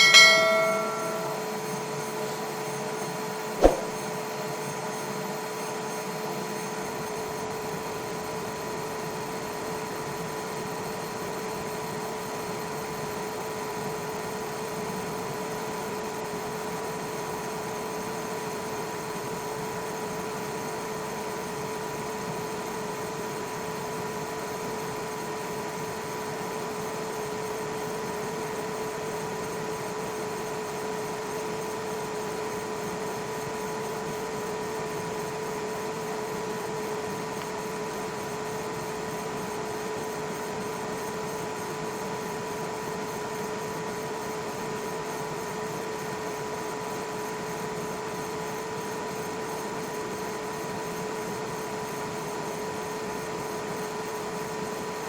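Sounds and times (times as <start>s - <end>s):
sharp click: 3.6s - 4.0s.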